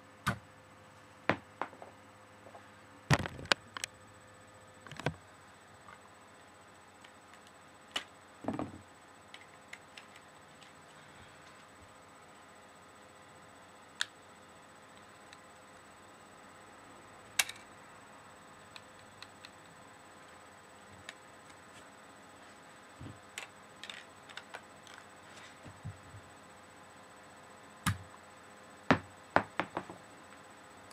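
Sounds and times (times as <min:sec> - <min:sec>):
faint electrical hum: 0:00.0 - 0:30.9
plastic parts clicking and snapping: 0:23.4 - 0:25.0.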